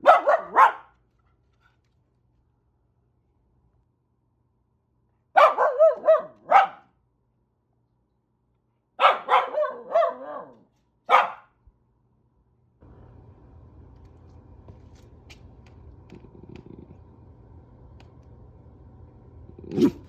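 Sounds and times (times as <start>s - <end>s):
dog barking: 0.0s - 1.0s, 5.3s - 7.0s, 9.0s - 11.6s.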